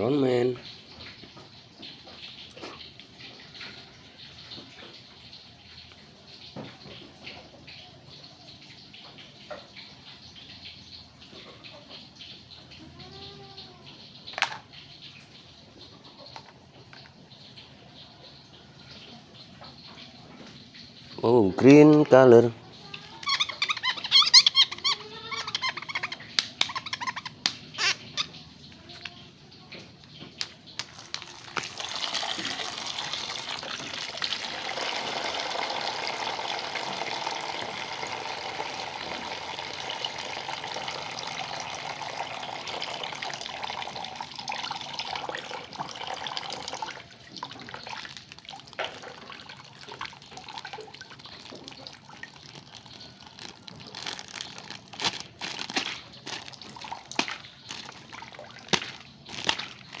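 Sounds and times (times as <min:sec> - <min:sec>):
water running from a tap: 0:00.0 - 1:00.0
water sloshing and splashing: 0:18.8 - 0:29.2, 0:29.8 - 1:00.0.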